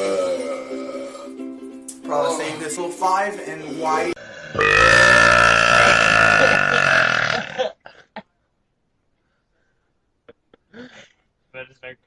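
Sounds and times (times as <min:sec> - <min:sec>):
man burping: 0:04.2 - 0:08.0.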